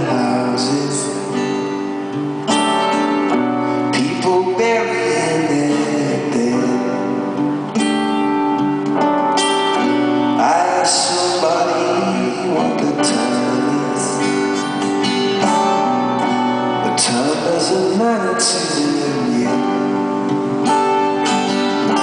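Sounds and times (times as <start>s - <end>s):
person singing: 0.0s - 1.7s, 3.9s - 7.4s, 10.4s - 15.9s, 16.7s - 22.0s
strummed acoustic guitar: 0.0s - 22.0s.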